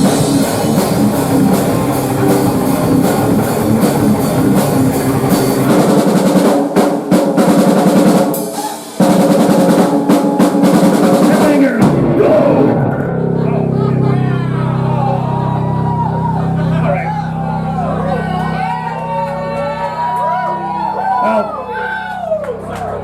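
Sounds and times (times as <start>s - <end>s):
distorted guitar: 0.0s - 6.3s, 10.0s - 21.8s
pounding drum kit: 0.0s - 19.0s
live rock band playing: 0.0s - 21.7s.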